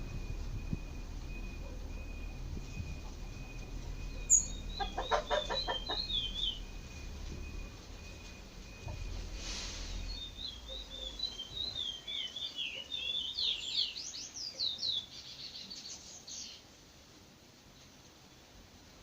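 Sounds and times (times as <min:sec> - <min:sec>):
faint high whistle-like tone: 0:00.0 - 0:04.7, 0:06.5 - 0:12.1
finch singing: 0:00.0 - 0:16.6.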